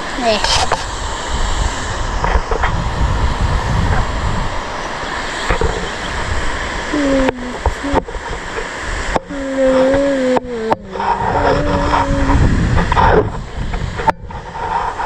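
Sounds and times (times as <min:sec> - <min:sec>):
rushing outdoor noise: 0:00.0 - 0:15.0
wind buffeting microphone: 0:00.0 - 0:15.0.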